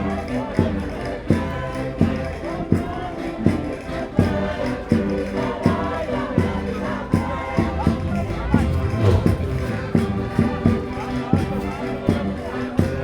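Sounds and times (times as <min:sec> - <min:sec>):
button accordions playing folk tune: 0:00.0 - 0:13.0
strong steady beat: 0:07.2 - 0:12.4.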